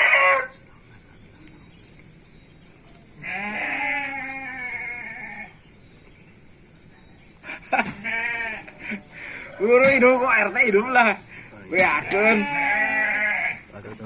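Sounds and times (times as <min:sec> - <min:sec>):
farm animal bleating: 0:03.2 - 0:05.6, 0:07.9 - 0:08.9, 0:11.7 - 0:13.8.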